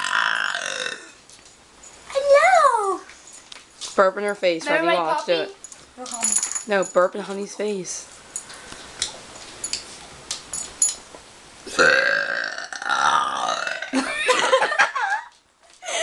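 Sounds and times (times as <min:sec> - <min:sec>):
person burping: 0:00.0 - 0:01.2, 0:11.7 - 0:14.2.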